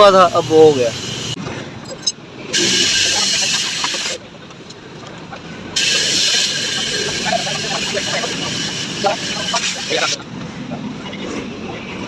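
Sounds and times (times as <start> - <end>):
compressed air hissing: 2.6 - 4.2, 5.8 - 10.2.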